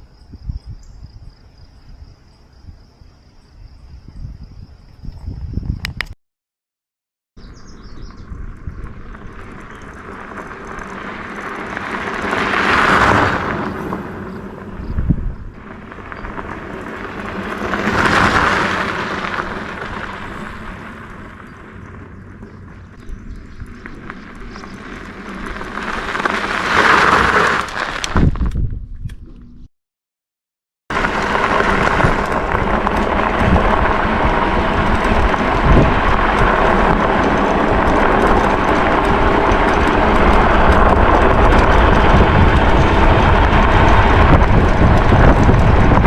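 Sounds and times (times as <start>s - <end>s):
rushing outdoor noise: 7.4s - 28.7s, 30.9s - 46.0s.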